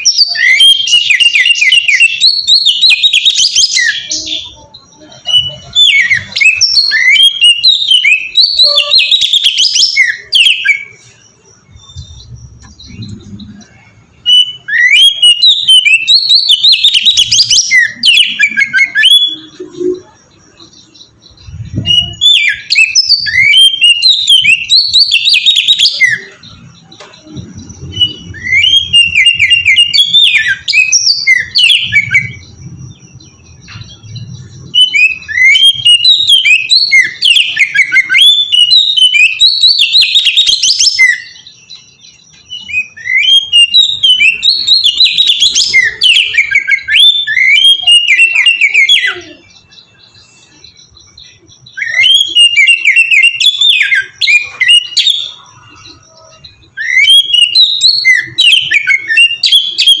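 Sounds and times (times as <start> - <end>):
bird singing whistled phrases: 0.0 - 60.0.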